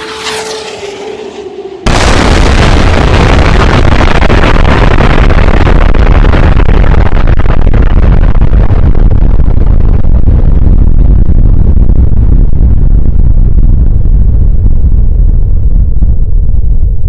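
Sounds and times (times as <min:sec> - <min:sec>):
loud rumbling noise: 0:00.0 - 0:17.0.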